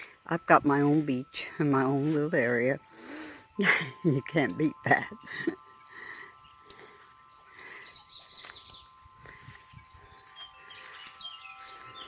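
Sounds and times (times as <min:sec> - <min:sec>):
thin high tones: 0:00.0 - 0:12.0
birds chirping and calling: 0:02.9 - 0:12.0.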